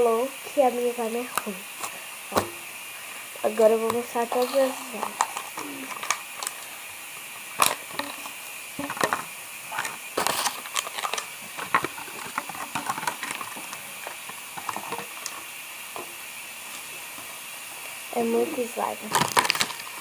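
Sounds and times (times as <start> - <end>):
steady hiss: 0.0 - 20.0
slime and plastic pots clicking: 3.8 - 6.7, 7.6 - 16.1, 19.1 - 20.0.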